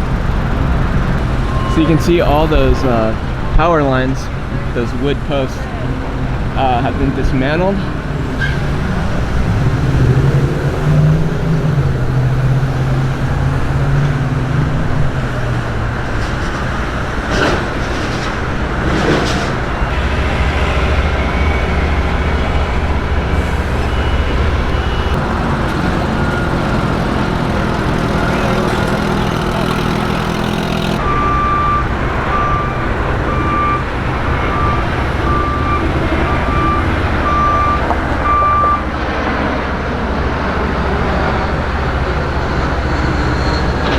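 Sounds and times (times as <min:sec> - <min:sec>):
heavy machinery engine rumble: 0:00.0 - 0:43.9
backup alarm beeping: 0:23.5 - 0:25.2, 0:30.7 - 0:38.9.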